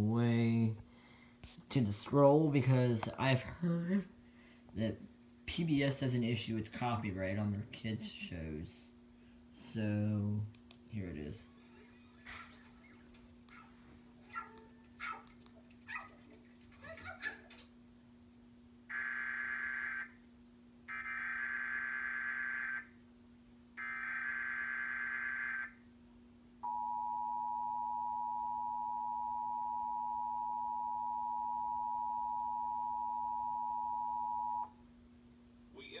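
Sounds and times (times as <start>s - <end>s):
two-tone alarm signal: 20.9s - 22.9s, 23.8s - 25.8s, 26.6s - 34.8s.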